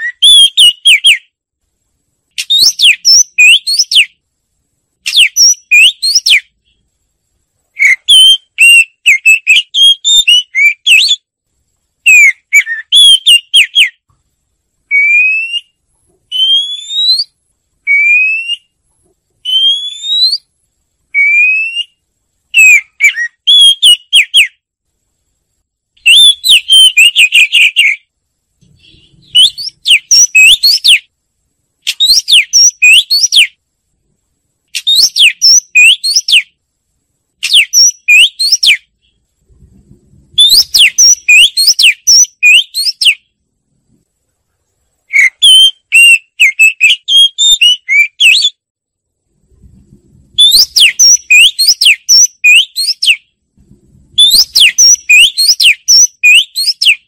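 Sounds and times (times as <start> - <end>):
bird singing whistled phrases: 0.0 - 1.3, 2.4 - 4.2, 5.1 - 6.5, 7.8 - 11.3, 12.0 - 14.0, 14.9 - 18.8, 19.4 - 20.5, 21.1 - 24.6, 26.0 - 28.0, 28.7 - 31.1, 31.9 - 33.6, 34.8 - 36.6, 37.4 - 39.2, 40.4 - 43.2, 45.1 - 48.6, 50.4 - 53.2, 54.2 - 57.0.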